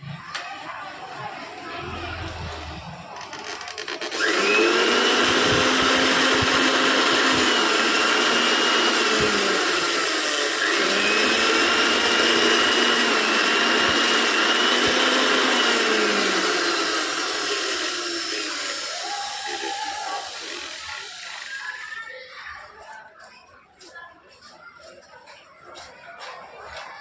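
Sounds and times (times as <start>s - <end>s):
mixer grinder motor whine: 2.3s - 21.7s.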